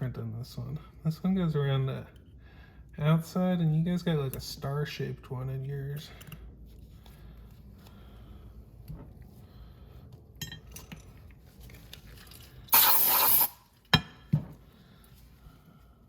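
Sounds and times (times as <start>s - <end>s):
aerosol spray can hiss: 12.7s - 13.7s.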